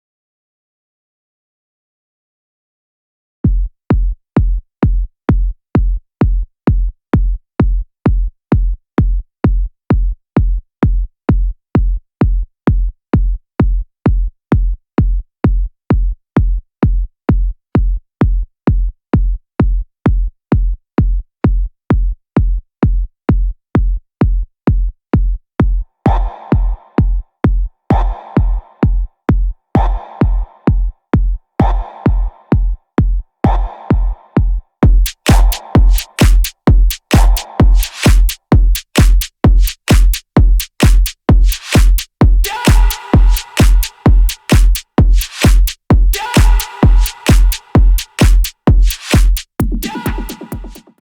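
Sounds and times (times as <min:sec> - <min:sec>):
drum machine kick drum: 0:03.4 - 0:51.0
electronic dance music: 0:26.1 - 0:27.2, 0:27.9 - 0:29.1, 0:29.8 - 0:30.9, 0:31.6 - 0:32.8, 0:33.5 - 0:51.0.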